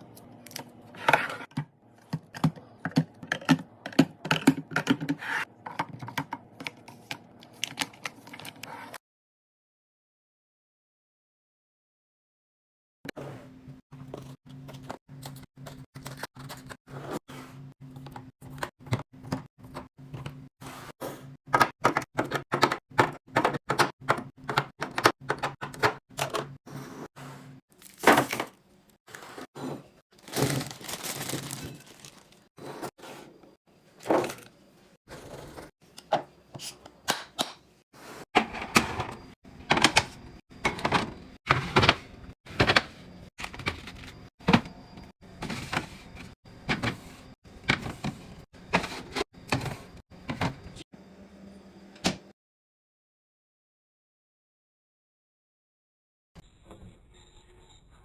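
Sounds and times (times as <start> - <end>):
items clicking and knocking: 0.1 - 8.7, 21.5 - 26.6, 38.4 - 50.8
packaging crinkling: 30.2 - 32.5.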